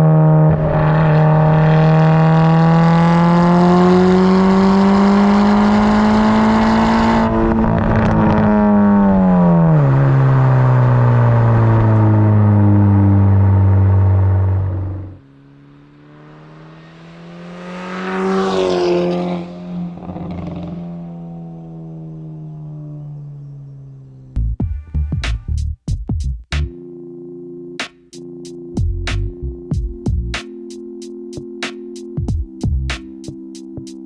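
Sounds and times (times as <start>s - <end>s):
car engine revving through exhaust: 0.0s - 21.6s.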